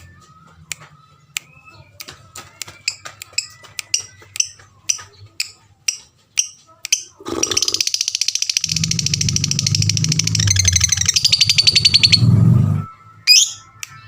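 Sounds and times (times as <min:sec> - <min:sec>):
lovebird chirping and trilling: 0:02.9 - 0:12.6, 0:13.2 - 0:13.8.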